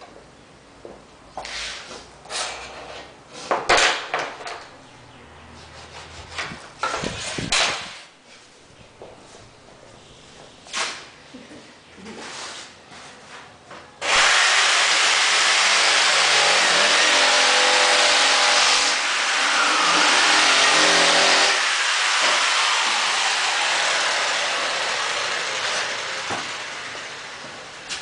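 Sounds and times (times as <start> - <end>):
power saw cutting plank: 14.0 - 28.0.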